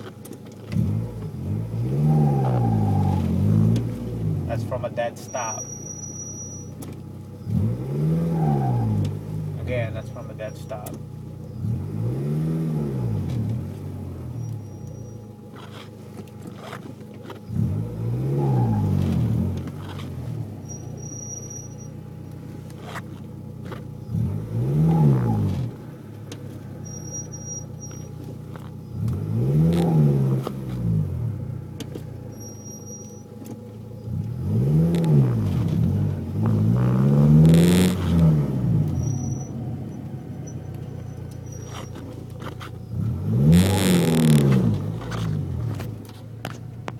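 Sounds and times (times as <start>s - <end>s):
car pulling away: 0.0s - 46.9s
squeak during clutch engagement: 4.5s - 7.6s, 8.2s - 11.8s, 14.2s - 24.3s, 26.3s - 29.1s, 31.8s - 36.6s, 38.0s - 46.7s.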